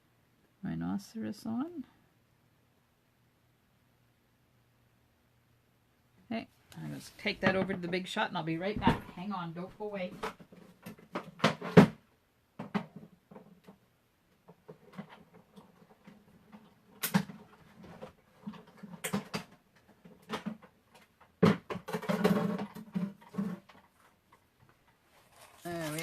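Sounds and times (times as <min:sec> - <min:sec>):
objects knocking and clicking: 0:07.4 - 0:08.0, 0:12.6 - 0:25.0.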